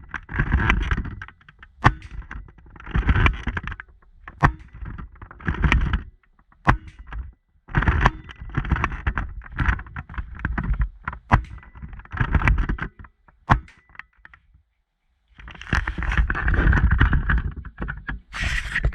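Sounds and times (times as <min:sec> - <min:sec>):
sharp clicks or knocks: 0:00.0 - 0:14.4
handling noise on microphone: 0:00.0 - 0:14.6, 0:15.3 - 0:18.9.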